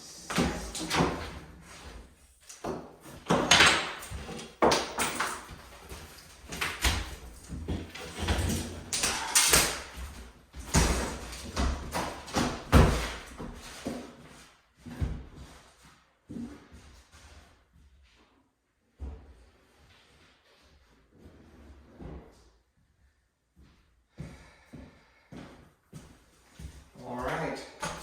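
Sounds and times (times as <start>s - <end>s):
wood banging and knocking: 2.7s - 5.6s.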